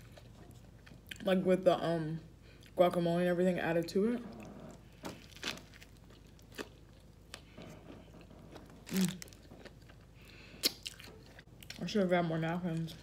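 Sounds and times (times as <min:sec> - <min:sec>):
wet chewing sounds: 0:04.4 - 0:11.8
bread crunching: 0:04.9 - 0:11.8.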